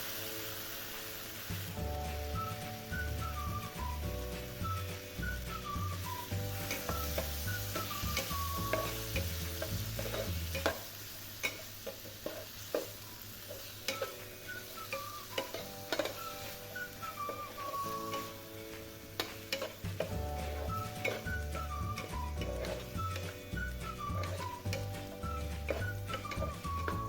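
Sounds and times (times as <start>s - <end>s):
meat sizzling in a pan: 0.0s - 27.0s
utensil scraping a pan: 6.6s - 10.8s, 19.2s - 27.0s.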